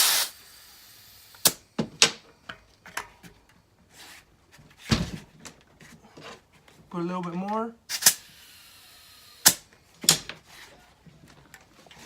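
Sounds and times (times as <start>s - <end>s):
compressed air burst: 0.0s - 1.6s, 7.9s - 9.6s
faint air hiss: 0.0s - 2.5s.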